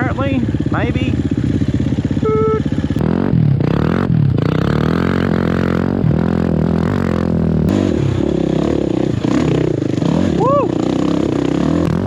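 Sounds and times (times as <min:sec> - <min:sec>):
motorcycle engine revving: 0:00.0 - 0:12.0
motorcycle rattling: 0:00.0 - 0:12.0.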